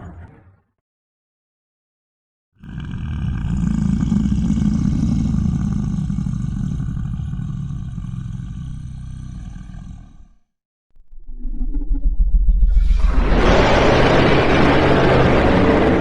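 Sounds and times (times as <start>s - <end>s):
low rough dragon roar: 2.6s - 10.5s.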